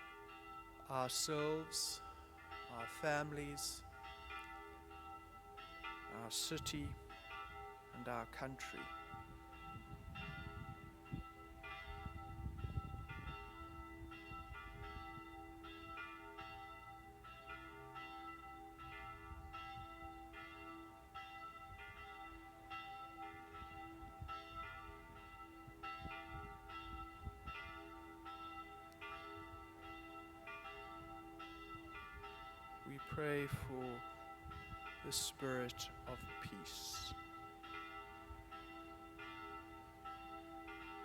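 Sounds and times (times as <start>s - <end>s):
church bells ringing: 0.0s - 41.0s.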